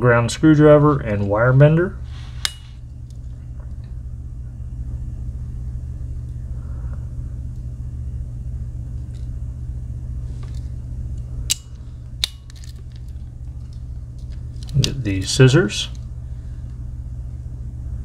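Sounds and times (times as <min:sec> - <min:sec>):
steady low rumble: 0:00.0 - 0:18.0
knife tool snapping closed: 0:11.5 - 0:12.8.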